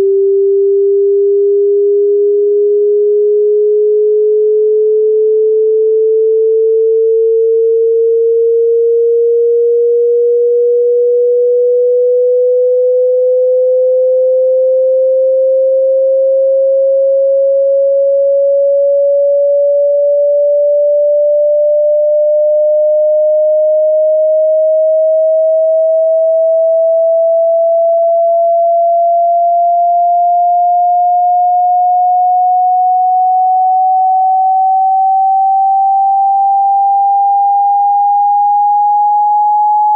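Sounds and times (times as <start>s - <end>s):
sine tone rising in pitch: 0.0s - 39.9s.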